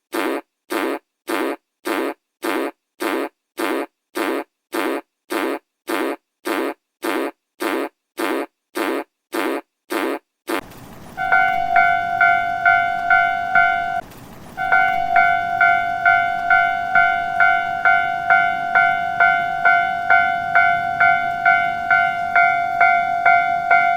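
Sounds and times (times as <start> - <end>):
railway crossing bell clanging: 11.0 - 23.9.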